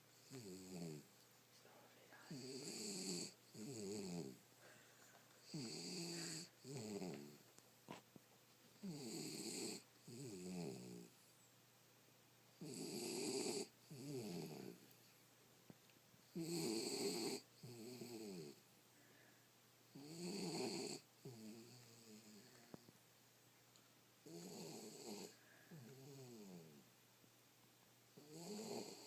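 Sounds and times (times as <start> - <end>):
puppy snoring: 0.0 - 1.2, 2.2 - 4.4, 5.4 - 7.5, 8.8 - 11.2, 12.6 - 14.9, 16.3 - 18.6, 19.9 - 22.9, 24.2 - 26.9, 28.1 - 29.0.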